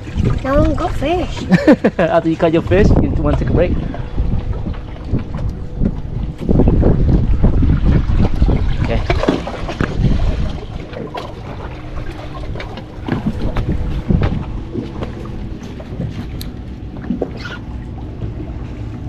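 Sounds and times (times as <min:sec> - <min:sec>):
steady low hum: 0:00.0 - 0:19.0
wind buffeting microphone: 0:00.0 - 0:19.0.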